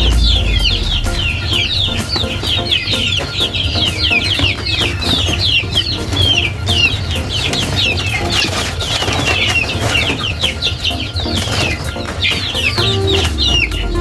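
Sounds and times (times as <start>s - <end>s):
low steady rumble: 0.0s - 3.0s
chicks peeping: 0.0s - 14.0s.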